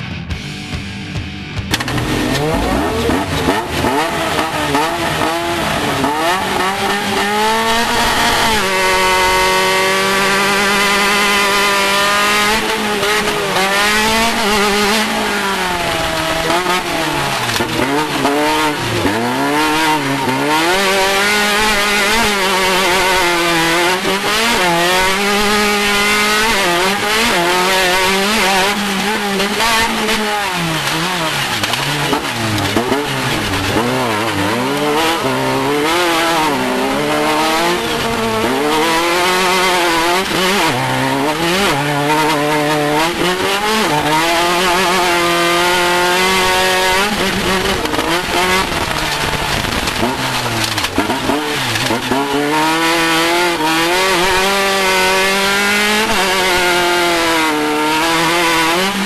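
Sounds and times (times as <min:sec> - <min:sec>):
race car engine revving: 0:01.6 - 0:59.0.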